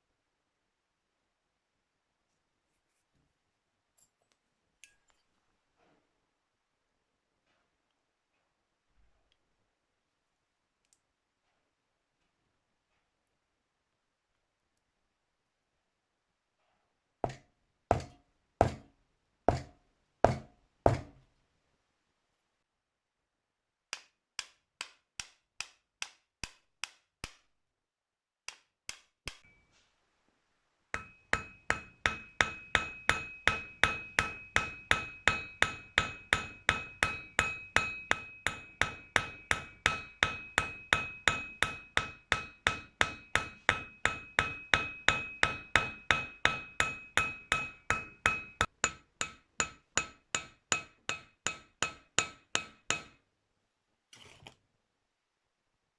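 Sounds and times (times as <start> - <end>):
hammer striking metal: 31.0 - 53.2.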